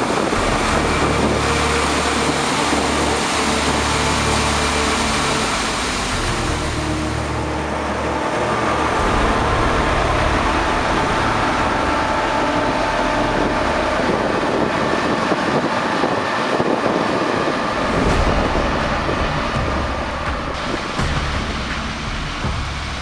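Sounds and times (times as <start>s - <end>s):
combine harvester running: 0.0s - 23.0s.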